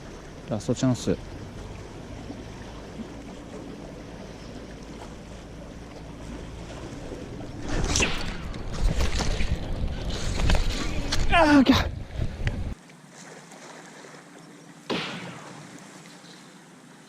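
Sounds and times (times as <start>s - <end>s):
sea water lapping: 0.0s - 17.0s
wind on microphone: 7.5s - 12.8s.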